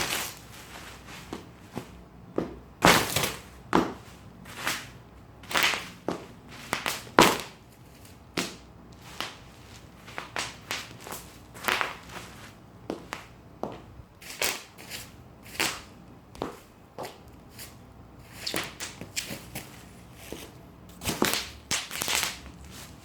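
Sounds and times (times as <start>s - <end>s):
bubble wrap popping: 0.0s - 1.4s, 2.8s - 13.3s, 20.9s - 23.0s
bubble wrap crinkling: 0.0s - 2.0s, 2.9s - 13.3s, 17.5s - 23.0s.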